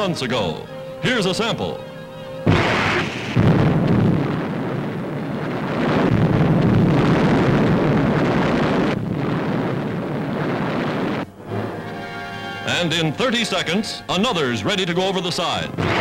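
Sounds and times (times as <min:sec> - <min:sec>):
depth charge explosion: 0:02.5 - 0:11.7.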